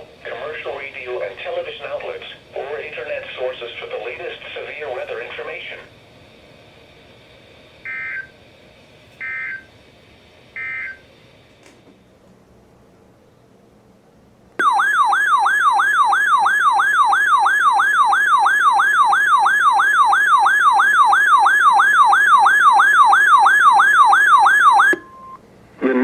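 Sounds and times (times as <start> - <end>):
warbling electronic alert tone: 14.6 - 25.3.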